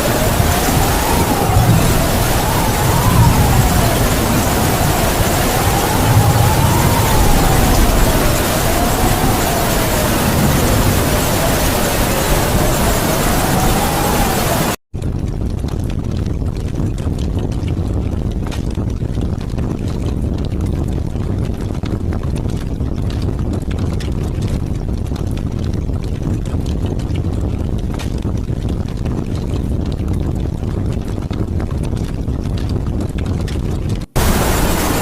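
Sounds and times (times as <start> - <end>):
heavy rain: 0.0 - 14.8, 33.4 - 35.0
wind: 0.0 - 35.0.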